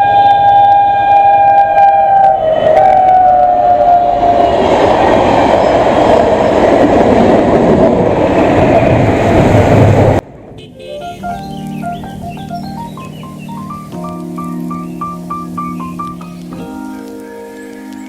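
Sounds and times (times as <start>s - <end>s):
train rumbling and rattling: 0.0s - 16.9s
horn sounding falling tone: 10.6s - 16.4s.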